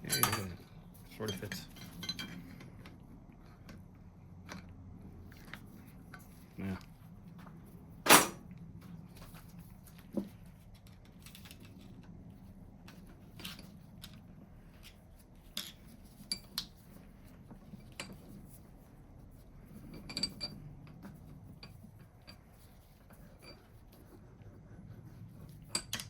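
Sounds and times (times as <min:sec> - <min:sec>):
metal tools clinking: 0:00.0 - 0:00.6
faint steady hum: 0:00.0 - 0:26.0.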